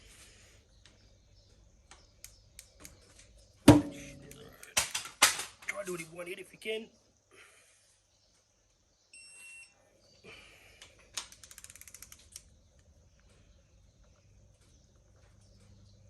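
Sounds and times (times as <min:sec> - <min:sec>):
torque wrench ratchet clicks: 0:11.2 - 0:12.5.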